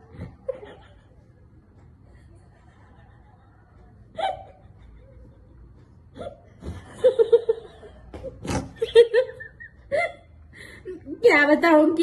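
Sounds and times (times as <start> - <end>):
woman giggling: 0.3 - 1.4, 2.6 - 8.1, 8.8 - 11.2.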